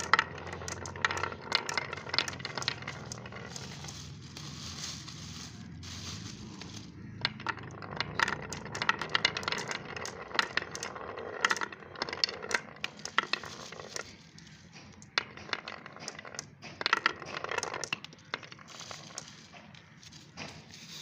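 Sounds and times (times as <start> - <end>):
marbles clattering down a track: 0.0 - 21.0.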